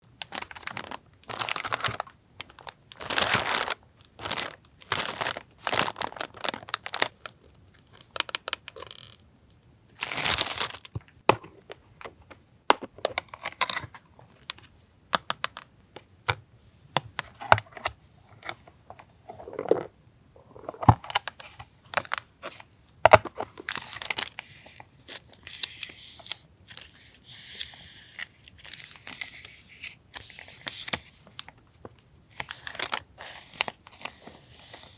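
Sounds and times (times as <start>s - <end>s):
packaging crinkling: 0.2s - 9.2s, 10.0s - 11.0s, 23.2s - 25.6s, 32.4s - 34.9s.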